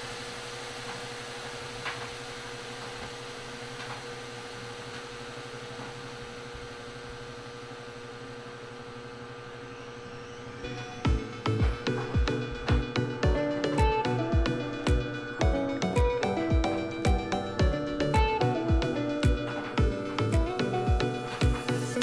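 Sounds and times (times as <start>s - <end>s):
mechanical hum: 0.0s - 22.0s
held tone: 9.7s - 22.0s.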